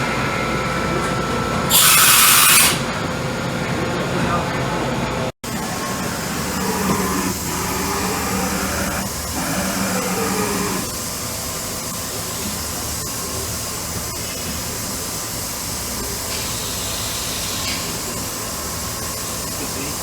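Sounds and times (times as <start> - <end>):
machining center motor whine: 2.6 - 20.0
steady whirring hiss: 5.5 - 11.3.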